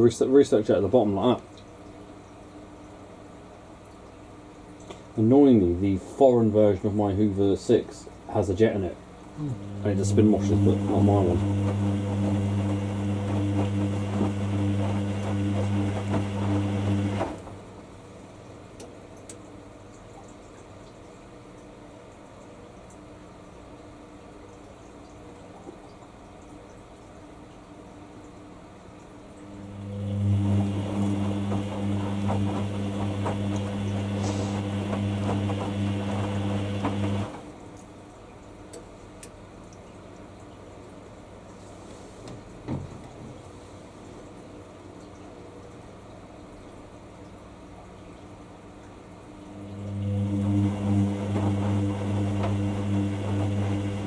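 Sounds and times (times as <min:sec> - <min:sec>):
washer dryer humming: 0:08.9 - 0:18.5, 0:29.2 - 0:37.8, 0:48.9 - 0:54.0.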